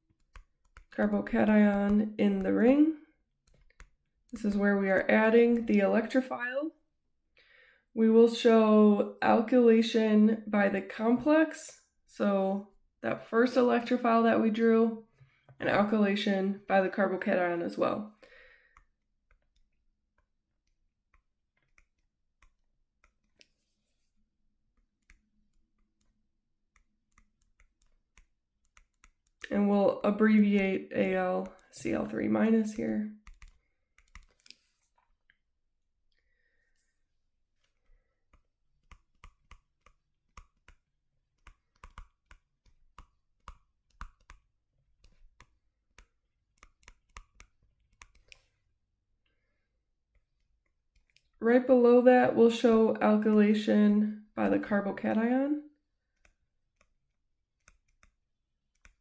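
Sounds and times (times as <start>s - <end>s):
faint clicks and taps: 0.0s - 2.8s, 3.4s - 4.6s, 18.2s - 24.0s, 24.7s - 29.6s, 30.4s - 32.3s, 33.2s - 35.4s, 37.6s - 48.6s, 50.1s - 51.4s, 56.1s - 59.0s.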